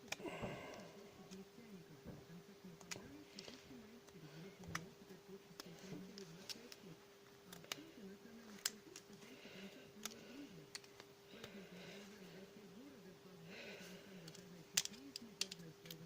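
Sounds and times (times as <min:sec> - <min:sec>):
small parts clicking: 0:00.0 - 0:01.5, 0:05.5 - 0:07.9, 0:08.5 - 0:11.5, 0:14.2 - 0:16.0
steady low hum: 0:00.0 - 0:16.0.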